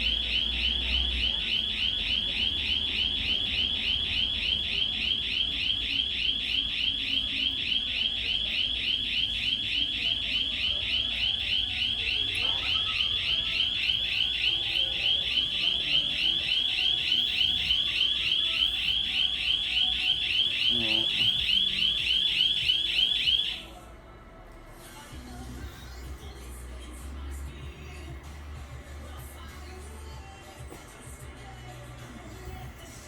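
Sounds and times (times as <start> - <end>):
warbling panic alarm: 0.0 - 23.7.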